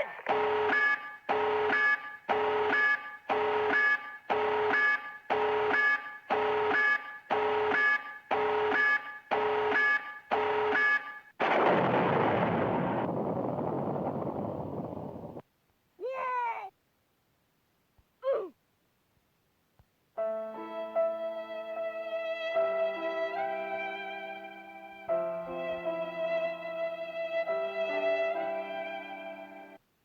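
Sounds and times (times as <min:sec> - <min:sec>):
two-tone alarm beeping: 0:00.3 - 0:11.3
loud rumbling explosion: 0:11.4 - 0:15.4.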